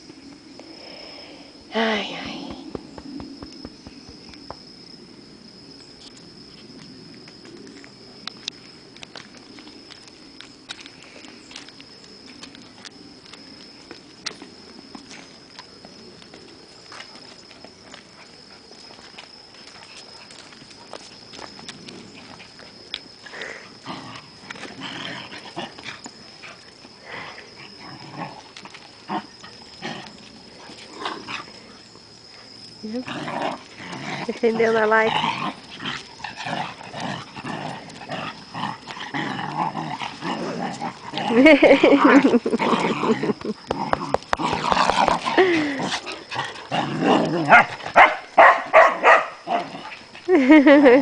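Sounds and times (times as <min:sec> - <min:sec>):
dogs growling: 0:23.3 - 0:31.8, 0:32.9 - 0:50.6
dogs barking sharply: 0:47.5 - 0:49.7.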